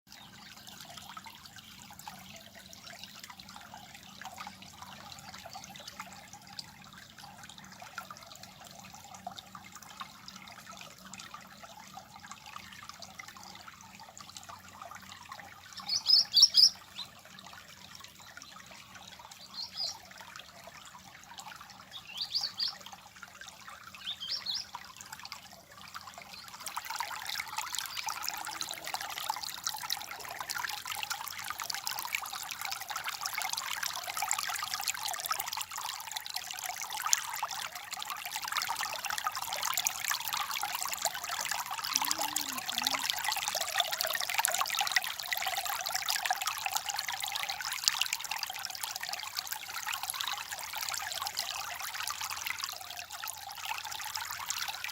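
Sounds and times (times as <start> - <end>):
stream babbling: 0.1 - 54.9.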